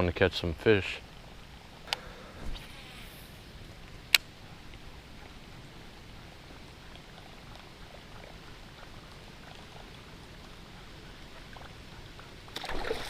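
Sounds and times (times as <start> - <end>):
water trickling and lapping: 0.0 - 13.0
water drips and splashes: 6.4 - 13.0.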